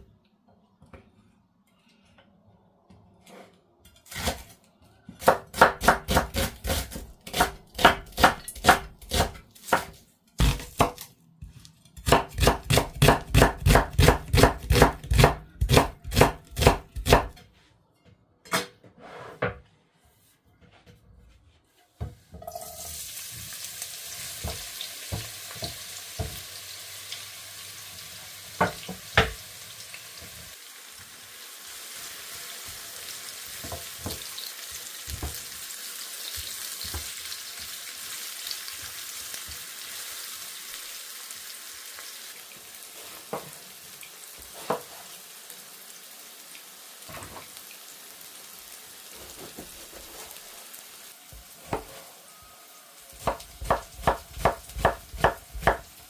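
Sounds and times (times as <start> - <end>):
food sizzling in oil: 22.5 - 56.0.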